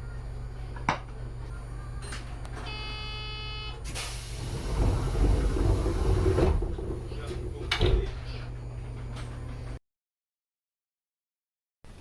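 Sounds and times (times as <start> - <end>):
door-closing buzzer: 2.6 - 3.9
doors sliding shut rumble: 3.9 - 9.4.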